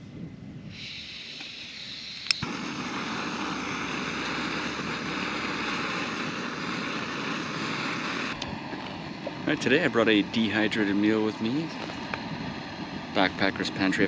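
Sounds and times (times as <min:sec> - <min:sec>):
burner flame rushing: 0:00.0 - 0:14.0
gas hissing: 0:00.0 - 0:14.0
igniter click: 0:01.3 - 0:02.5.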